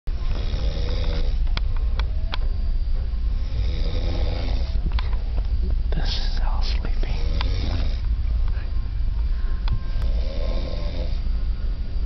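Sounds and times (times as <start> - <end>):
steady low hum: 0.1 - 12.0
man snoring: 0.2 - 1.4, 3.4 - 4.8, 7.0 - 8.0, 10.0 - 11.2.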